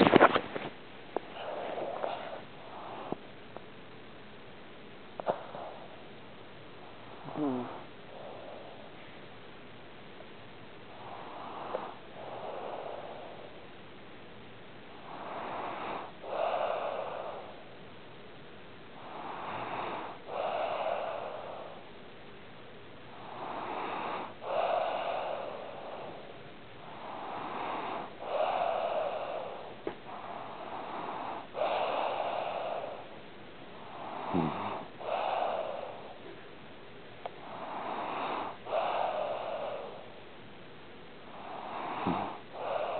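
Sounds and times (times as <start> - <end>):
pet snoring: 0.0 - 3.3, 6.9 - 9.0, 10.9 - 13.6, 14.9 - 17.8, 19.0 - 21.9, 23.1 - 36.5, 37.2 - 40.2, 41.2 - 42.9.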